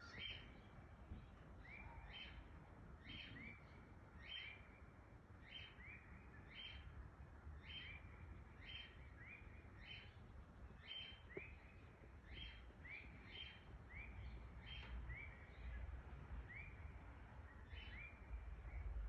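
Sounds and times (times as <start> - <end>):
birds calling faintly: 7.6 - 19.0.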